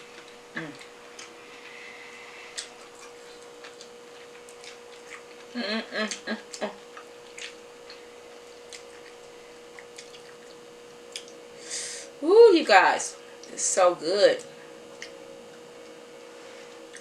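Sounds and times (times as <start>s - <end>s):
faint steady hum: 0.0s - 17.0s
person humming: 0.5s - 2.4s, 5.5s - 6.8s
wet chewing mouth clicks: 2.5s - 8.0s, 8.6s - 11.4s.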